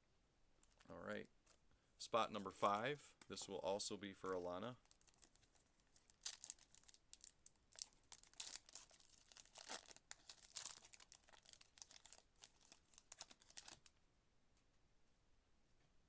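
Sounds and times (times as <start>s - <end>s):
wrapper tearing and crinkling: 4.2s - 13.9s.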